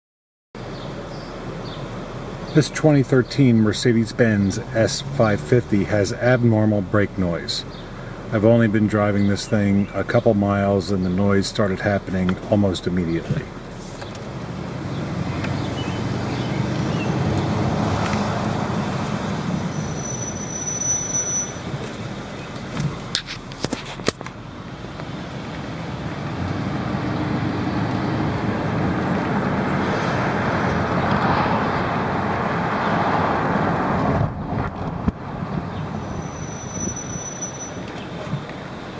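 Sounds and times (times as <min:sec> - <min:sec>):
car cabin and road noise: 0:00.6 - 0:38.9
high-pitched brake squeak: 0:19.7 - 0:21.7, 0:36.0 - 0:38.0.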